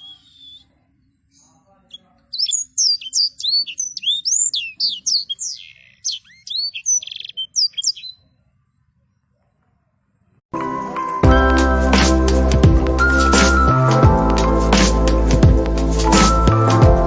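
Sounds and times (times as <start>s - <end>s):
songbird singing: 0.0s - 10.4s.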